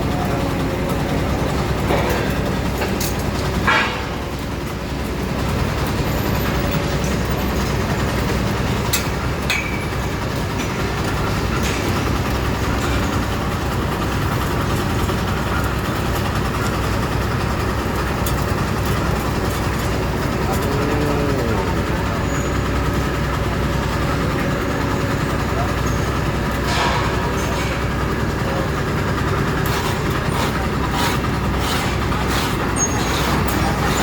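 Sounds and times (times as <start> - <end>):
heavy engine rumbling: 0.0 - 34.0.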